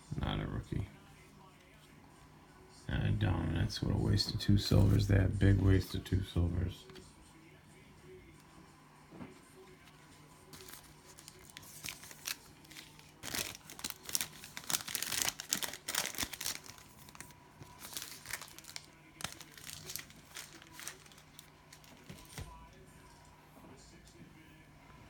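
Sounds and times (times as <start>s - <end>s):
plastic wrapper crinkling and tearing: 10.5s - 22.5s.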